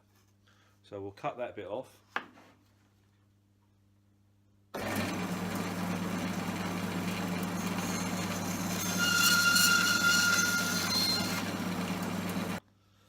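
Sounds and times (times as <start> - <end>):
power saw cutting plastic pipe: 4.8 - 12.6
saw blade squeal: 6.6 - 12.6.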